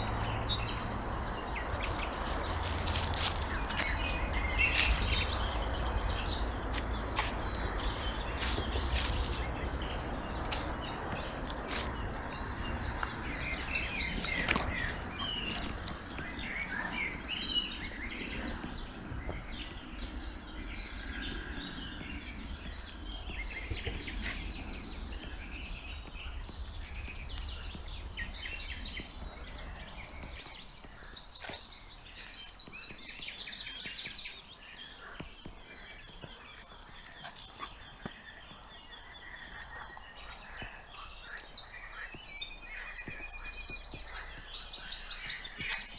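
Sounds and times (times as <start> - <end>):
songbirds chirping and singing: 0.0 - 45.9.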